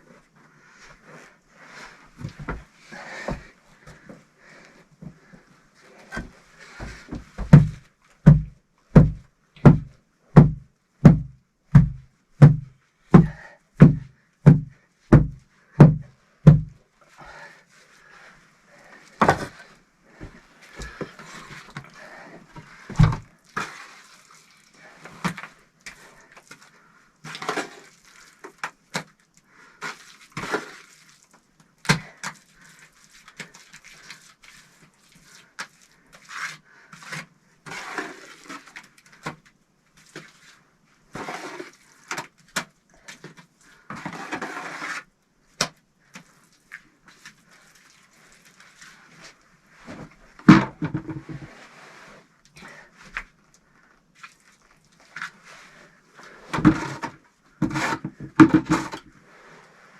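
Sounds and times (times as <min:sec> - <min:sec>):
scraping of mortar: 0:36.2 - 0:38.8, 0:41.1 - 0:42.2, 0:43.9 - 0:45.1, 0:55.0 - 0:59.6.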